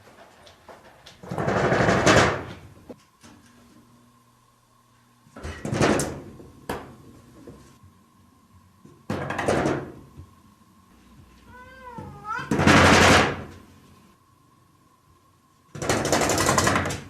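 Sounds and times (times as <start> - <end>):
cat meowing: 11.5 - 12.6.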